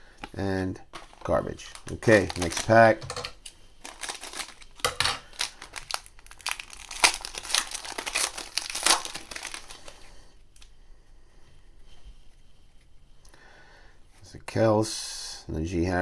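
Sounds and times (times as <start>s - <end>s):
plastic wrapper tearing and crinkling: 1.0s - 10.1s.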